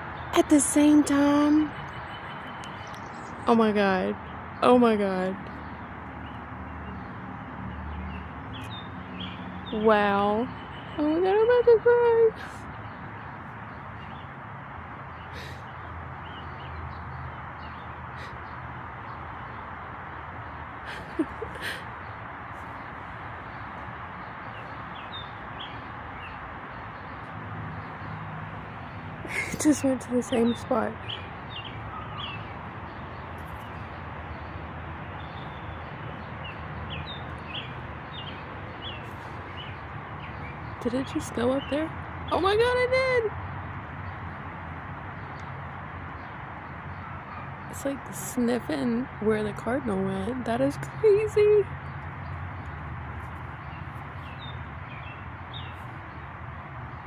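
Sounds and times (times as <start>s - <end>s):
bird chirping: 0.2s - 4.9s, 5.5s - 11.6s, 22.8s - 43.1s.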